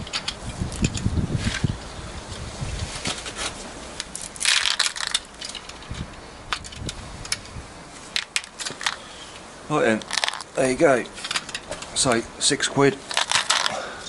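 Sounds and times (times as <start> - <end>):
steel balls clicking and clattering: 4.0 - 7.4, 8.1 - 9.1, 9.9 - 10.6, 13.1 - 13.8.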